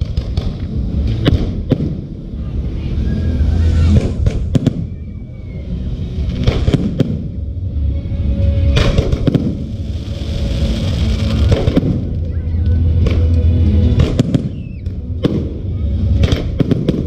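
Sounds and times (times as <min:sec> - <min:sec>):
low rumble: 0:00.0 - 0:17.0
fireworks crackling: 0:06.1 - 0:07.4, 0:08.8 - 0:17.0
firework shells bursting: 0:08.8 - 0:12.2.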